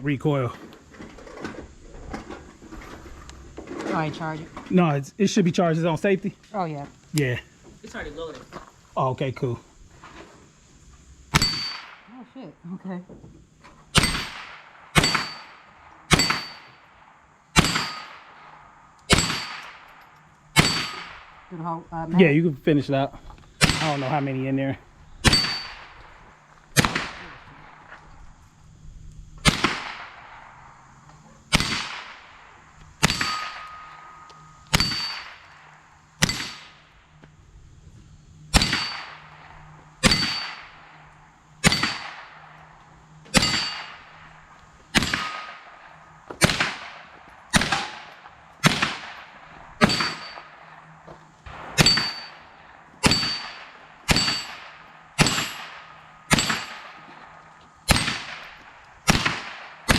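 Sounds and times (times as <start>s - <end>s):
rifle shots cracking: 11.3s - 12.1s, 14.0s - 16.7s, 17.6s - 21.5s, 23.6s - 24.4s, 26.7s - 27.8s, 29.4s - 30.7s, 31.5s - 36.8s, 38.5s - 41.0s, 41.6s - 42.7s, 43.3s - 59.9s.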